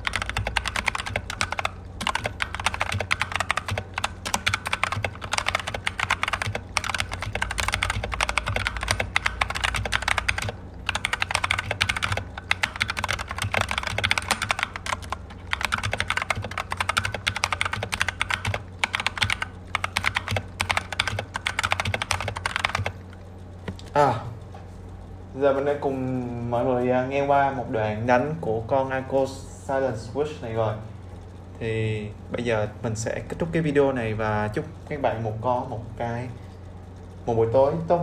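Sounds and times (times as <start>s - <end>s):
fast typing on keyboard: 0.0s - 23.2s.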